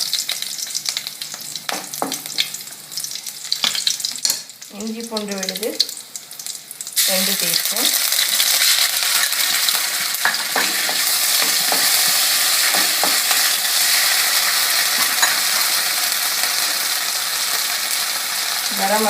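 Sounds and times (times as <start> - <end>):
paste sizzling in hot oil: 6.0 - 19.0.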